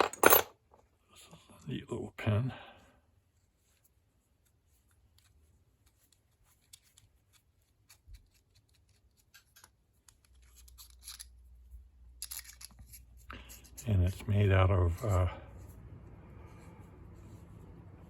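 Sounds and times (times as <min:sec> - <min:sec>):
small pen clicks and handling: 0:04.9 - 0:11.4, 0:12.2 - 0:13.8.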